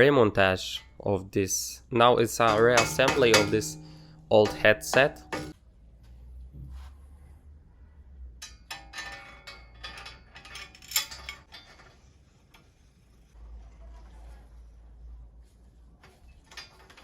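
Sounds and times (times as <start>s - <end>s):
small metal parts clinking: 8.4s - 11.8s.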